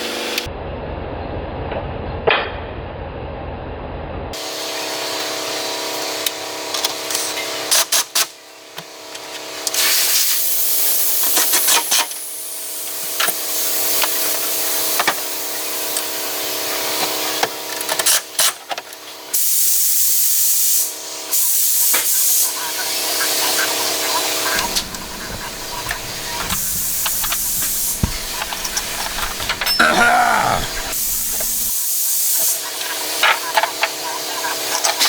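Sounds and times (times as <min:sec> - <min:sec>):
loud hissing bursts: 0:24.6 - 0:31.7.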